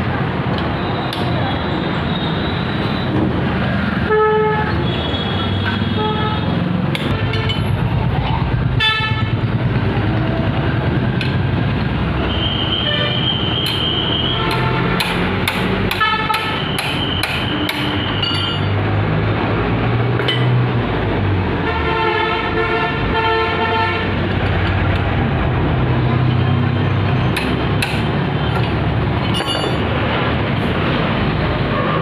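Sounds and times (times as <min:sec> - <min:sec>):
vehicle horn: 0:04.1 - 0:07.6, 0:08.8 - 0:09.4, 0:15.9 - 0:16.6, 0:21.6 - 0:24.2
rushing air: 0:29.8 - 0:32.0.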